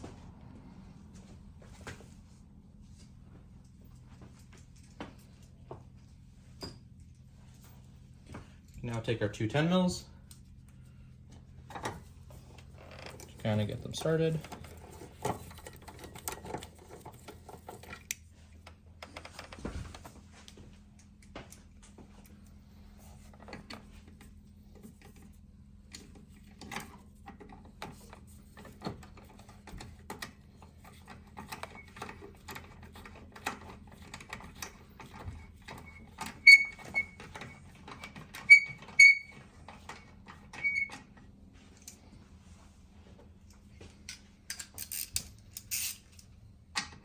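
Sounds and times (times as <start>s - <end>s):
short high squeaks: 35.8s - 37.7s, 38.4s - 39.4s, 40.6s - 41.0s.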